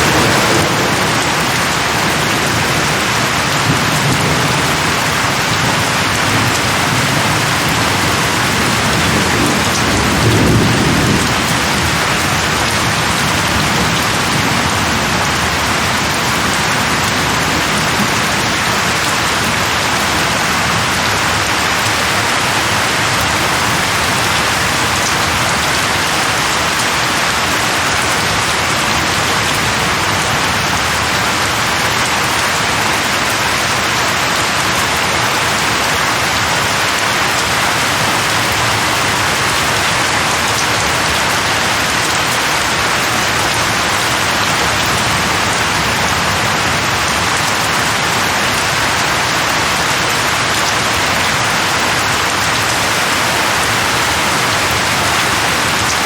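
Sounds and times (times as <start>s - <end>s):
thunder rumbling: 0.0s - 31.5s
heavy rain hissing: 0.0s - 56.0s.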